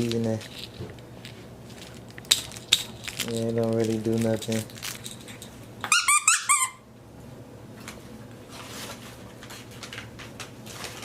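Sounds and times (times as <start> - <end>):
squeaky toy squeaks: 5.8 - 6.8.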